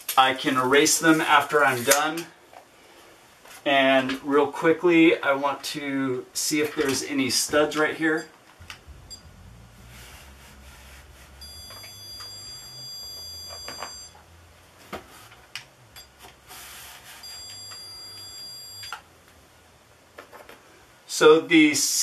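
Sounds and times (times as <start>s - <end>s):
high-pitched stud finder beeps: 11.4s - 14.2s, 16.0s - 16.3s, 17.1s - 19.0s.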